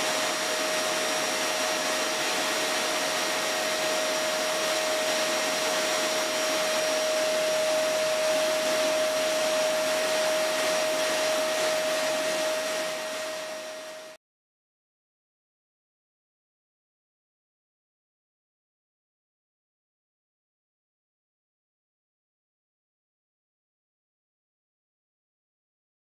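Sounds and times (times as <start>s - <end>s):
steady motor hum: 0.0s - 14.2s.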